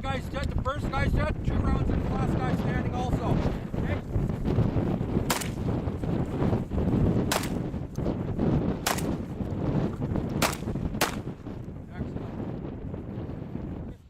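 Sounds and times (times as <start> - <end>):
shotgun shots: 5.2 - 5.7, 7.2 - 7.6, 8.8 - 9.2, 10.4 - 11.4.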